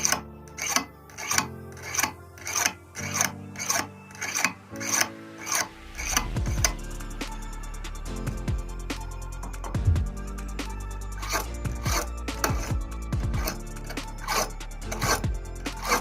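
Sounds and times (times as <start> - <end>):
knife sharpening strokes: 0.0 - 6.6, 11.2 - 12.7, 13.4 - 15.2, 15.8 - 16.0
soft background music: 0.0 - 16.0.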